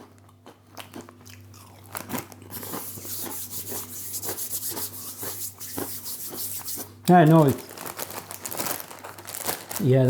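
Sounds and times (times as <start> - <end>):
crunching crisps: 0.0 - 6.0, 7.1 - 10.0.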